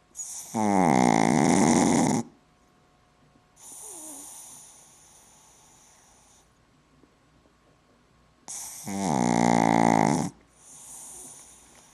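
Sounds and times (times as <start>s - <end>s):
dog snoring: 0.2s - 2.4s, 3.6s - 6.5s, 8.5s - 11.9s
soft hissing breath: 3.6s - 6.6s, 10.5s - 11.9s.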